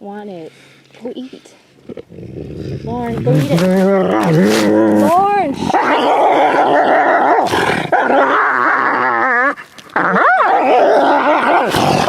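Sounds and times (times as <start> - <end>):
dog growling: 1.8 - 12.0
dog whining: 3.2 - 11.8.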